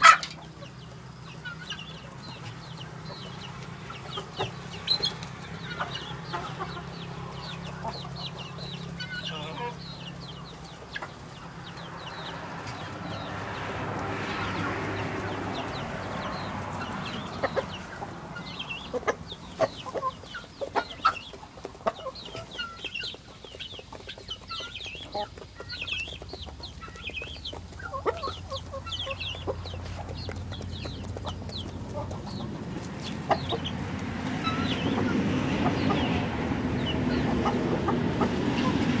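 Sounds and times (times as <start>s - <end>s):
chickens clucking: 0.0s - 39.0s.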